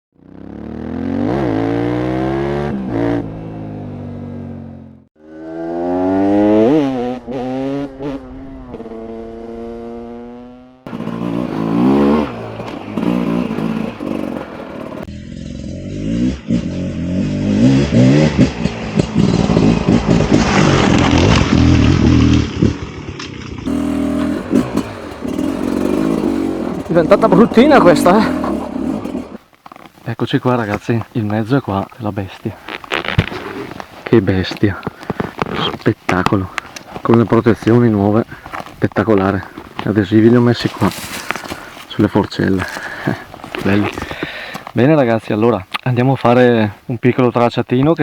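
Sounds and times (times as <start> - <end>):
two-stroke motorcycle engine revving: 0.2 - 29.4
clattering and scraping: 23.2 - 30.0, 39.5 - 44.8.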